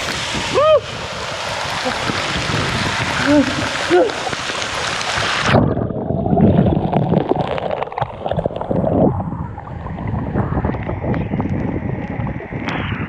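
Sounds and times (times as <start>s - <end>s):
high hiss of waterfall: 0.0s - 5.5s
water gurgling and splashing: 0.0s - 13.0s.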